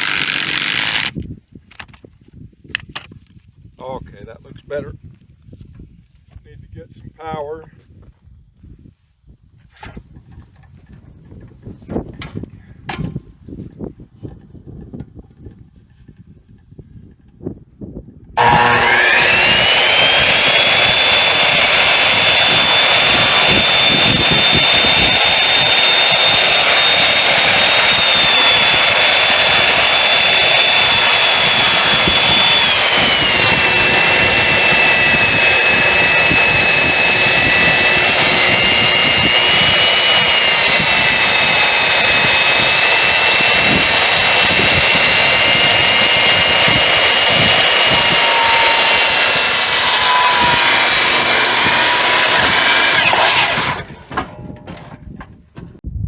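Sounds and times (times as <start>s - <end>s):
power saw whining: 0.0s - 1.2s, 18.4s - 55.2s.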